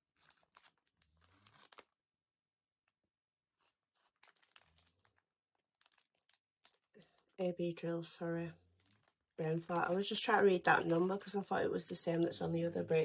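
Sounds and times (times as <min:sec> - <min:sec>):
plastic bags crinkling: 0:00.0 - 0:02.0, 0:03.6 - 0:07.4, 0:08.7 - 0:12.6.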